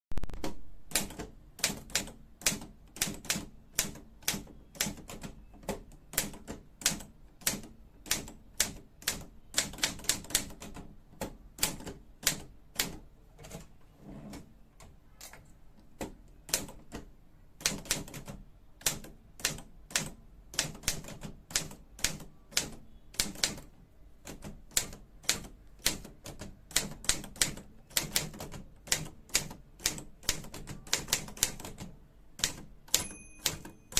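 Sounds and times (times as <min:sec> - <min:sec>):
manual typewriter key strikes: 0:17.6 - 0:33.9.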